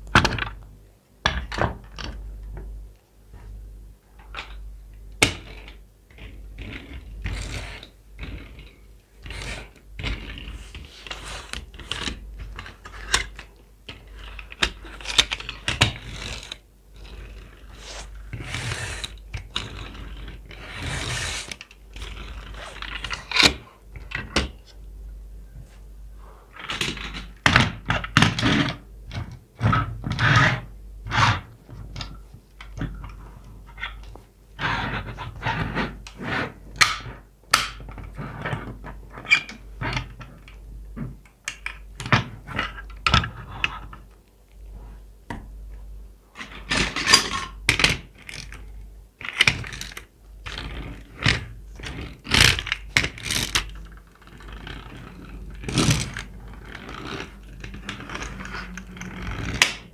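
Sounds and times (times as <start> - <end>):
packaging rustling and scraping: 50.6 - 59.9.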